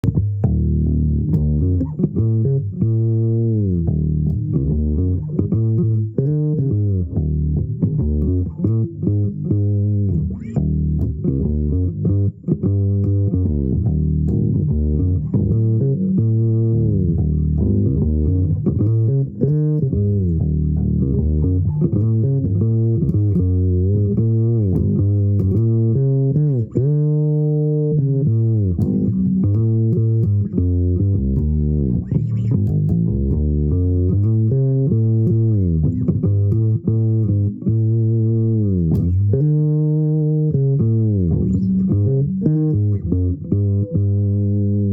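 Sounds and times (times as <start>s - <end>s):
bass guitar with slides: 0.0s - 44.9s.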